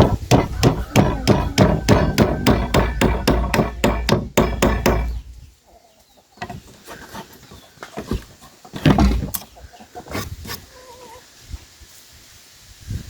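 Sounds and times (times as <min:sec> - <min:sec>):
rapid hammering on wood: 0:00.0 - 0:05.3.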